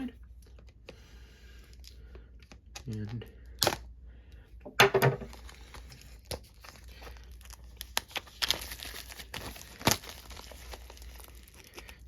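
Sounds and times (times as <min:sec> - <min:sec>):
packaging being torn and crinkled: 0:01.8 - 0:03.9, 0:05.2 - 0:12.0.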